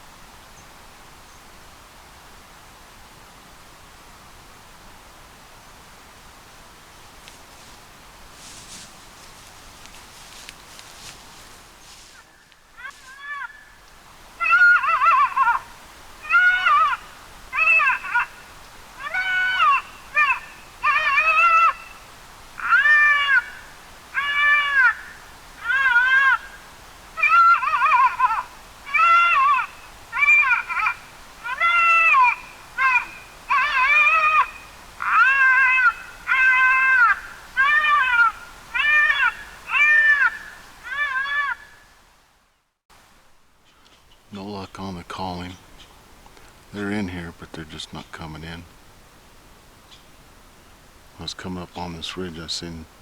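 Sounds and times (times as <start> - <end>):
predator call wailing cry: 12.8 - 13.6, 14.4 - 18.4, 19.0 - 21.9, 22.6 - 26.6, 27.2 - 41.7.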